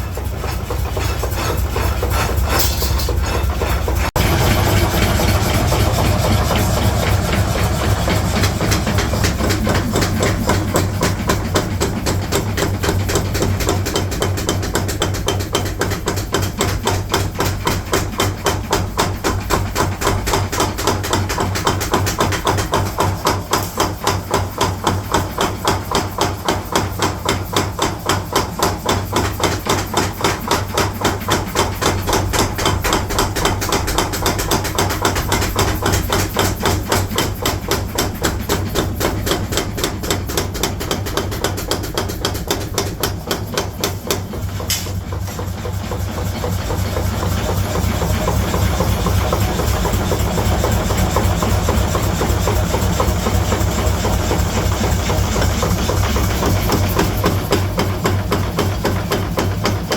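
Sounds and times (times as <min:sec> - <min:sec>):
low machine hum: 0:00.0 - 0:24.1
power hammer striking steel: 0:00.0 - 0:59.9.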